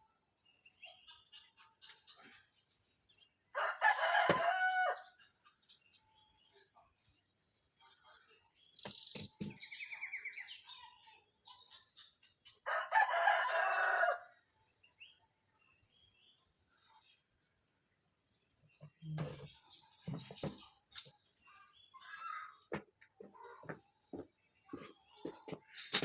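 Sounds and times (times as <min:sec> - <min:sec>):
rooster crowing: 0:03.6 - 0:05.0, 0:12.7 - 0:14.3.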